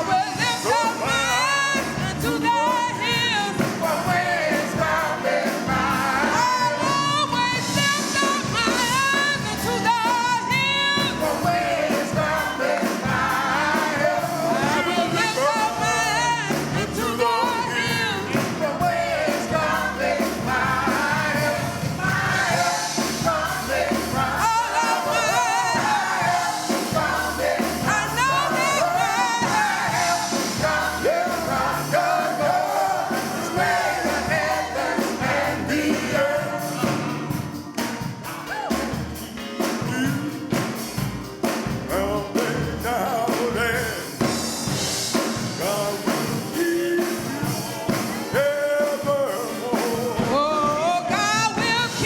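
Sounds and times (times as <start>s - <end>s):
choir singing gospel: 0.0s - 52.0s
drums: 0.0s - 52.0s
bass guitar: 8.4s - 46.8s.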